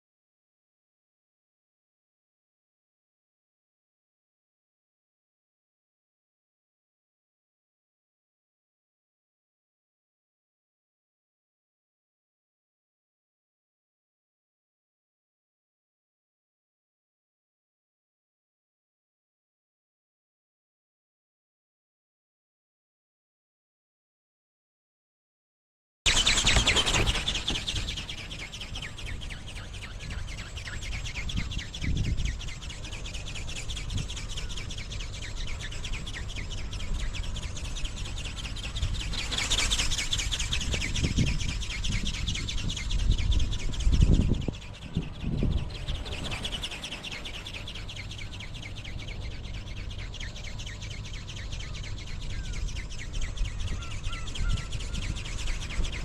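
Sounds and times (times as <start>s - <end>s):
wind gusting on microphone: 26.1s - 56.0s.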